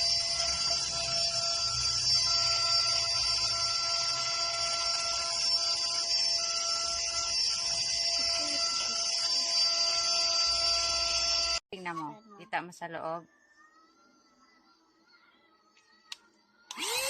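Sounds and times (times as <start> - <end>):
handheld vacuum cleaner whine: 0.0 - 11.6, 16.7 - 17.0.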